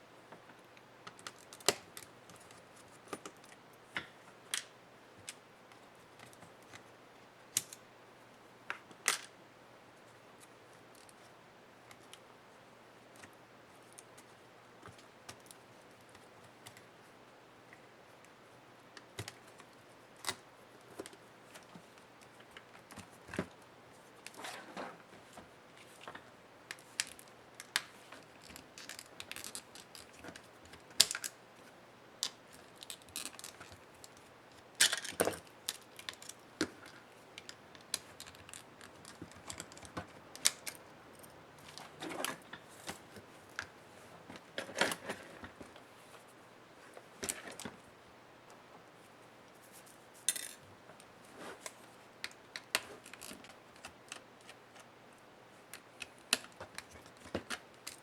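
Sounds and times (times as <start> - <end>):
small tools clicking on laptop parts: 25.9 - 31.4, 32.2 - 41.9, 51.6 - 54.9, 55.7 - 58.0.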